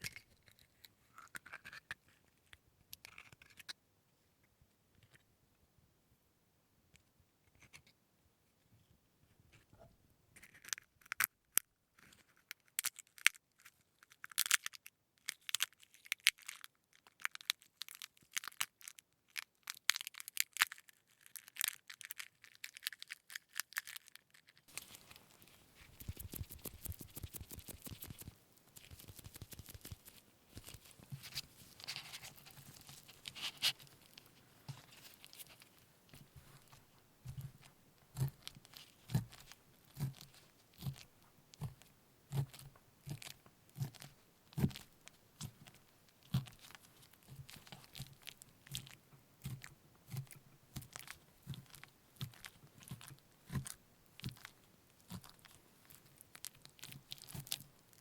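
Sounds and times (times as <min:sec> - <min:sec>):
food packaging crackling and rustling: 0:14.1 - 0:58.0.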